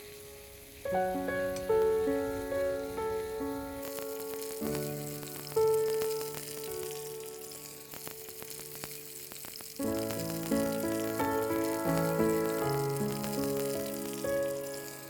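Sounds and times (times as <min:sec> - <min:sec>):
food sizzling in a pan: 0:00.0 - 0:15.0
soft background music: 0:09.9 - 0:15.0.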